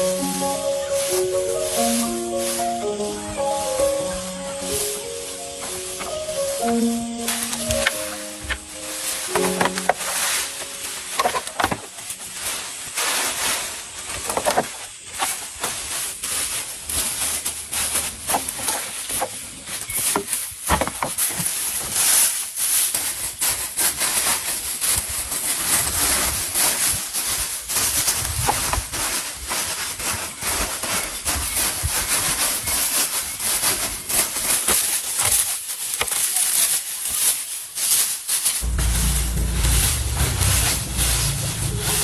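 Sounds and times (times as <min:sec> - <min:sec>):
rain hissing: 0:00.0 - 0:11.2, 0:38.6 - 0:42.0
wind: 0:00.0 - 0:42.0.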